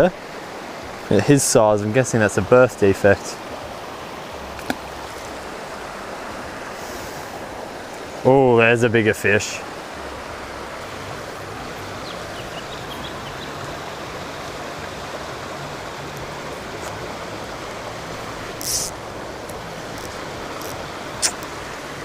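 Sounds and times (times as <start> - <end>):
stream water running: 0.0 - 22.0
brief hiss: 6.8 - 7.3, 18.6 - 19.0
sharp click: 20.6 - 21.5.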